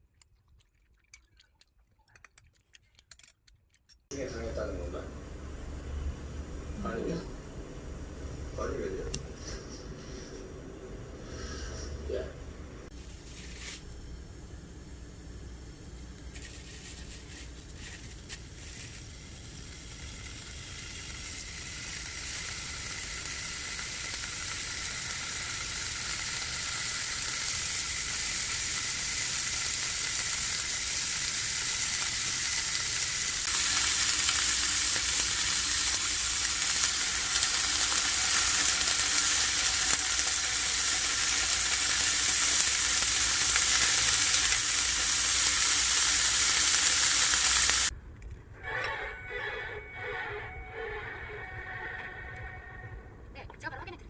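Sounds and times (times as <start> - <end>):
food sizzling in a pan: 12.9 - 47.9.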